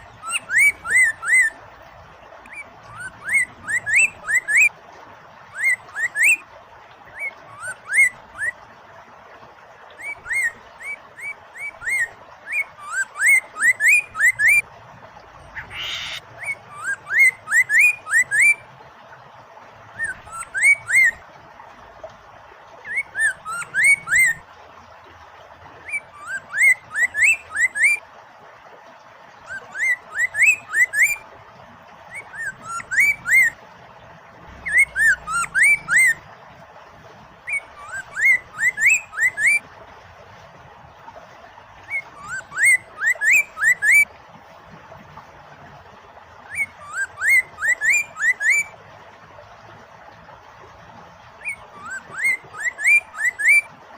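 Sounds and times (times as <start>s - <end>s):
bird singing whistled notes: 0.0s - 1.6s, 2.5s - 4.7s, 5.5s - 6.4s, 10.0s - 14.6s, 15.6s - 18.6s, 20.0s - 21.2s, 22.9s - 24.4s, 25.9s - 28.0s, 29.5s - 31.2s, 32.1s - 33.6s, 34.6s - 36.2s, 37.5s - 39.6s, 41.9s - 44.1s, 46.5s - 48.7s, 51.4s - 53.7s
flowing water hiss: 0.0s - 53.9s.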